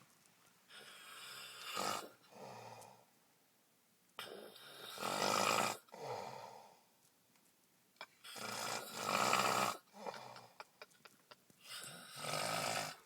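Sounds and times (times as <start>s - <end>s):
man snoring loudly: 1.1s - 2.1s, 4.6s - 5.8s, 8.3s - 10.2s, 11.8s - 13.0s.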